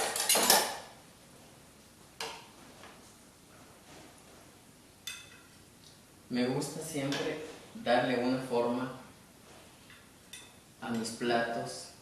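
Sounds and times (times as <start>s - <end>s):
utensils clattering on dishes: 0.0s - 0.8s.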